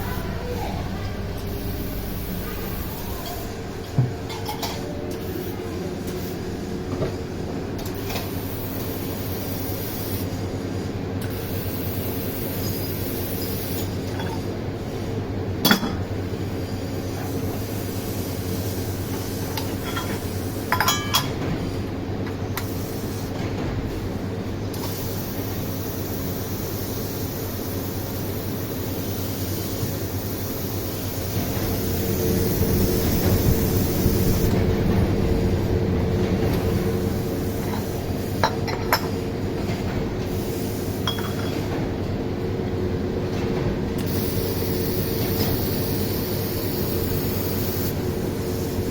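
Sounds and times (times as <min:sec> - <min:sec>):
machinery hum: 0:00.0 - 0:48.9.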